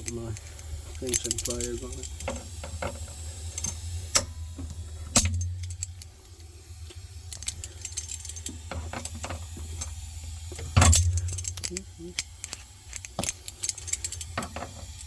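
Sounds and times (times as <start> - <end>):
steady low hum: 0.0 - 15.0
pliers clicking on metal tube: 10.6 - 15.0.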